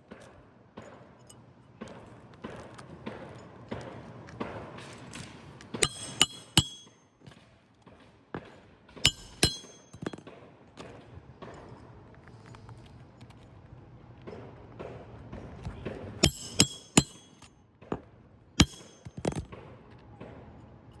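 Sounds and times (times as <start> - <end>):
metal roofing tool clinking: 4.9 - 7.4, 9.0 - 10.3, 16.2 - 17.5, 18.6 - 19.5.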